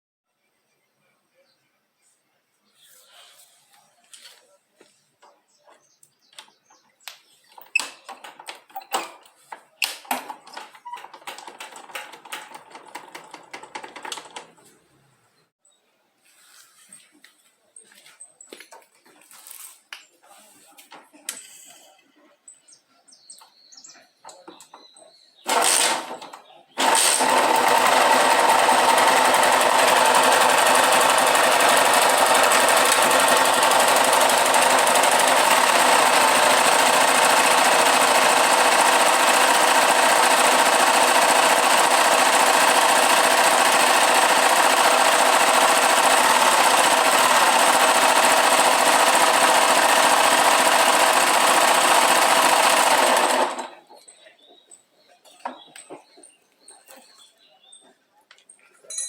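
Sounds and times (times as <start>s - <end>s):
single-cylinder motorcycle engine running: 10.5s - 14.5s, 25.5s - 53.8s.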